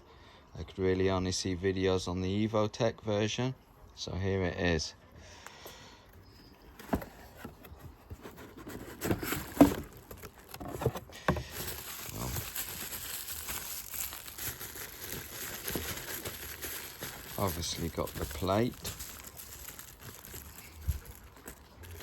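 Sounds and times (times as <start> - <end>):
packaging rustling and crinkling: 6.1 - 22.0.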